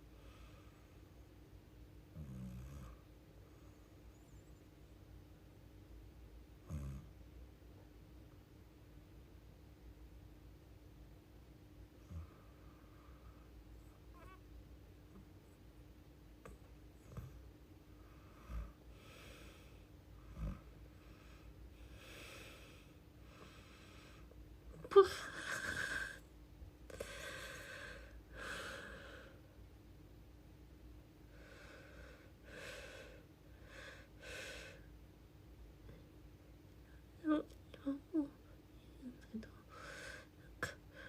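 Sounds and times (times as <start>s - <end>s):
woman breathing: 21.0s - 24.4s, 26.9s - 29.5s, 31.3s - 34.9s, 39.6s - 41.0s.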